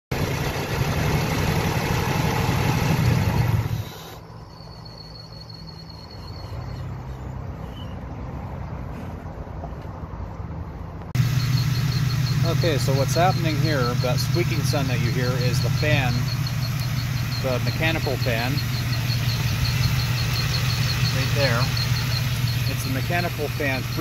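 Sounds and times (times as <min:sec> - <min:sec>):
car engine running: 0:00.1 - 0:04.2, 0:11.1 - 0:24.0
cooling fan high squeal: 0:00.4 - 0:08.0, 0:11.2 - 0:24.0.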